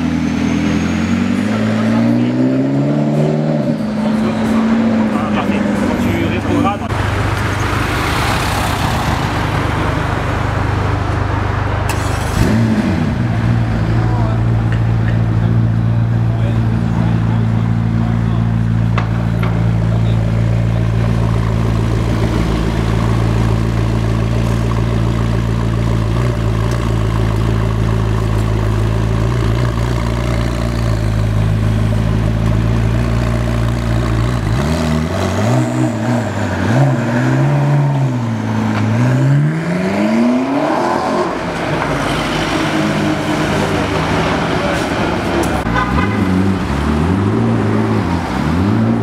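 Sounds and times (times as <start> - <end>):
car engine idling and revving: 0.0 - 49.0.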